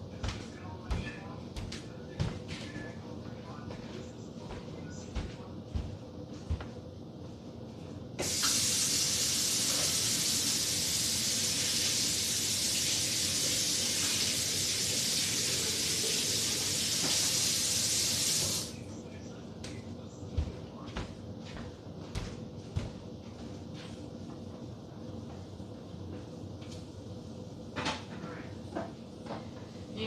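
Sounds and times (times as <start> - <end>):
loud steady hiss: 8.2 - 18.8.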